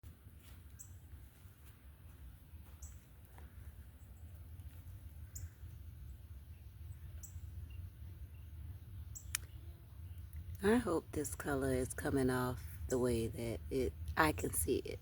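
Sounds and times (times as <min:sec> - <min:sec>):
steady low rumble: 0:00.1 - 0:15.0
bird chirping: 0:00.7 - 0:01.0, 0:02.5 - 0:03.1, 0:05.2 - 0:10.6.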